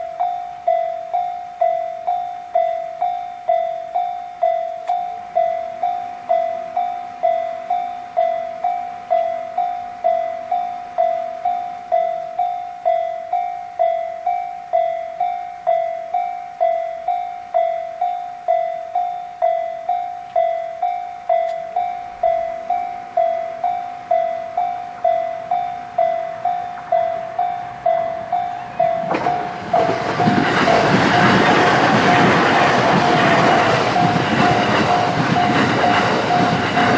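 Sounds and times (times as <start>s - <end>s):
level crossing alarm ringing: 0.0s - 36.9s
train wheels rushing on rails: 14.8s - 36.9s.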